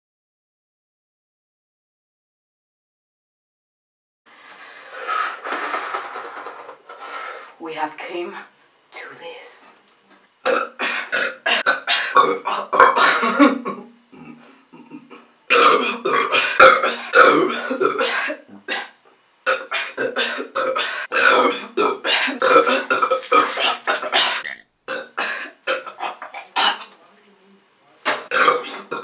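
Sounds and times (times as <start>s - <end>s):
woman burping loudly: 10.4s - 26.9s, 28.3s - 29.0s.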